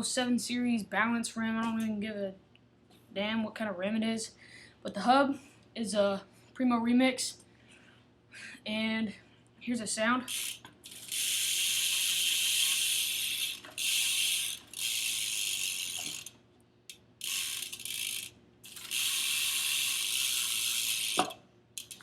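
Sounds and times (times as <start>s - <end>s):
bike hub ratcheting: 10.3s - 22.0s.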